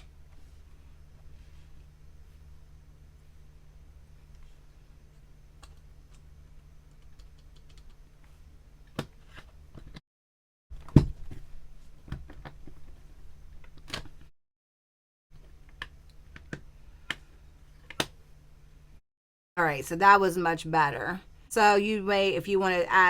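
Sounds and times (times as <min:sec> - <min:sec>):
low steady hum: 0:00.0 - 0:10.0, 0:19.6 - 0:23.0.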